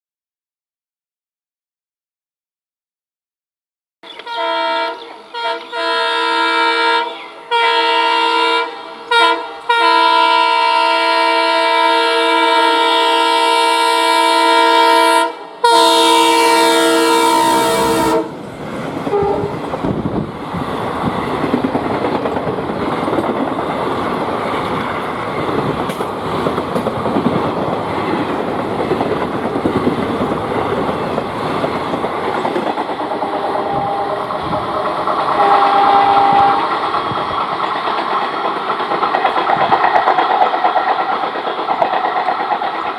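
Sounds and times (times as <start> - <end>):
diesel locomotive horn blasts: 4.0 - 18.5, 19.1 - 19.6, 33.3 - 34.5, 35.3 - 36.8
train wheels clattering over rails: 16.4 - 42.9.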